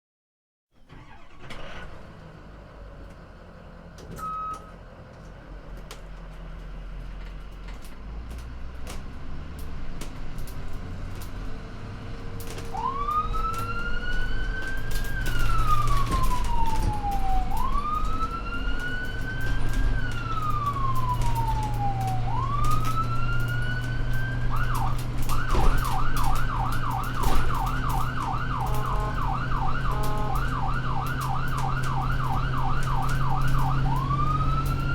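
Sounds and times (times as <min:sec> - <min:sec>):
ambulance engine running: 0:00.8 - 0:34.9
ambulance siren wailing and yelping: 0:00.9 - 0:02.0, 0:12.4 - 0:34.9.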